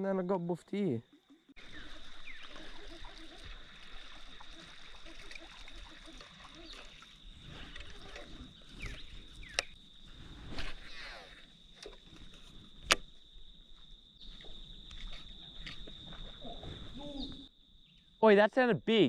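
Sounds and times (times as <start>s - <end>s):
water trickling: 1.1s - 9.8s.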